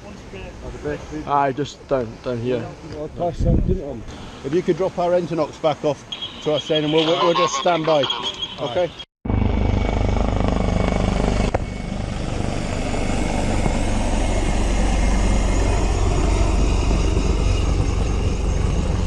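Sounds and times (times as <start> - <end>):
engine drone: 7.2 - 19.0.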